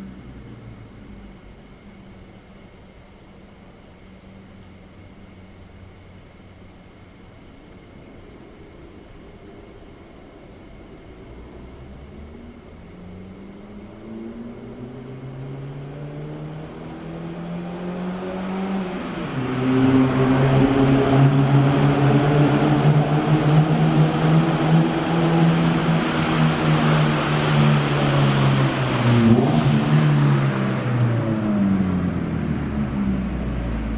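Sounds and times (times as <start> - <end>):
car engine accelerating: 0.0 - 2.8, 10.6 - 33.9.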